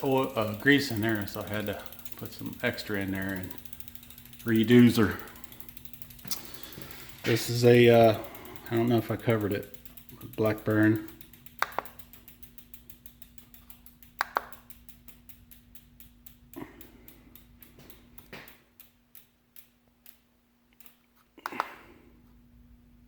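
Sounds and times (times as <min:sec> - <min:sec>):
rapid even ticking: 0:00.0 - 0:21.0
sharp clicks and knocks: 0:11.2 - 0:12.3, 0:13.2 - 0:14.9, 0:17.6 - 0:21.8.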